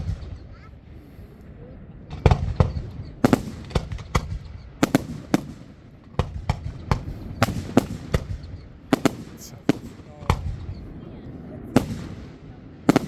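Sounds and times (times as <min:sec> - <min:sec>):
fireworks exploding: 0:00.0 - 0:13.0.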